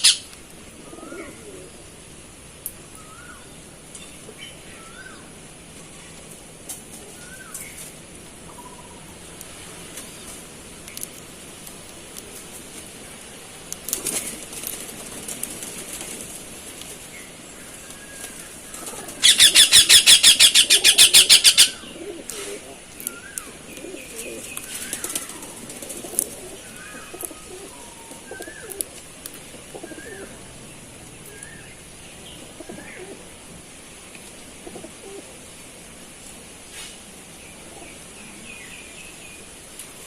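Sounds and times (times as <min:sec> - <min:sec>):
soft low bird calls: 0:00.0 - 0:02.0, 0:18.0 - 0:29.0
bird wings flapping: 0:13.8 - 0:17.1, 0:24.1 - 0:26.6.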